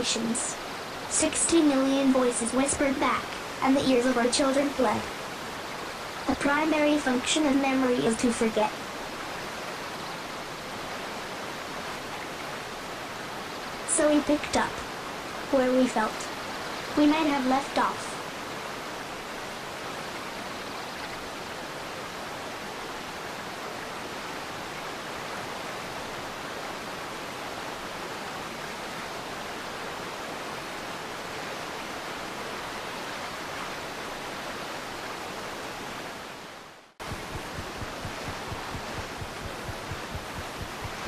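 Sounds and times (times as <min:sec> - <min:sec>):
steady static-like rushing noise: 0:00.0 - 0:41.0.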